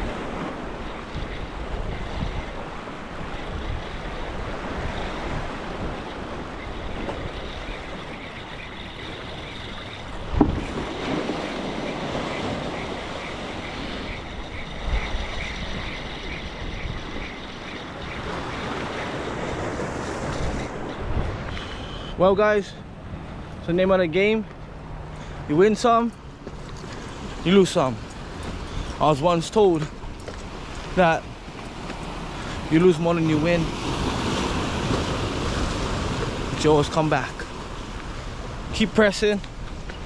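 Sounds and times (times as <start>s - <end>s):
wind buffeting microphone: 0.0s - 22.2s
surf washing against shore: 0.0s - 40.0s.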